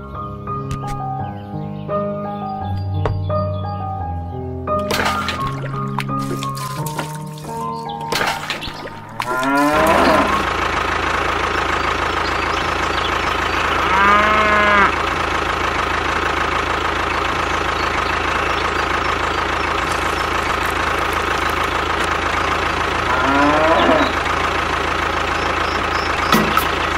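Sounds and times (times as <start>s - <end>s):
cow mooing: 9.2s - 10.5s, 13.7s - 15.0s, 23.0s - 24.2s.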